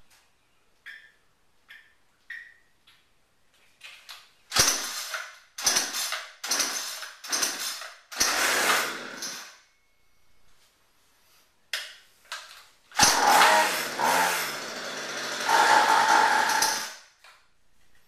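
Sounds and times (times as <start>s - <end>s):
recoil starter cord whirring: 13.0s - 17.0s.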